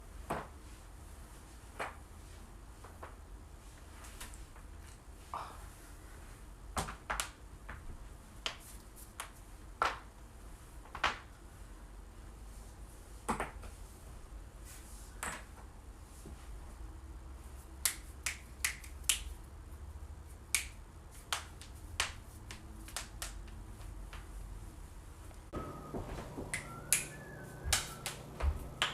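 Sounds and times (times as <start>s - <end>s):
faint low hum: 23.6s - 28.9s.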